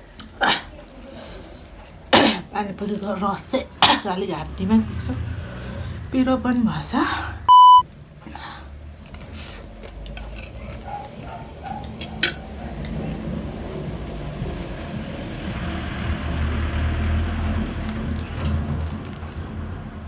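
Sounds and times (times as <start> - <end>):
chewing: 0.0 - 3.7, 8.1 - 20.0.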